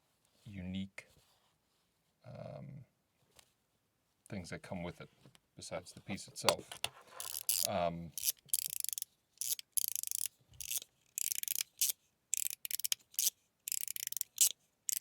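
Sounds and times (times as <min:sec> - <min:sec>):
fidget slider rasping strokes: 0:07.1 - 0:15.0.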